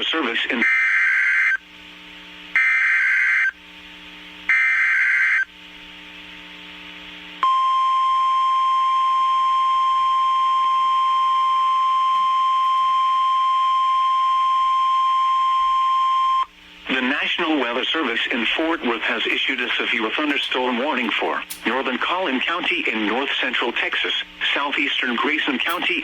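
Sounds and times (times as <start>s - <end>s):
steady warning alarm tone: 0.6s - 1.7s, 2.5s - 3.6s, 4.5s - 5.5s, 7.4s - 24.2s.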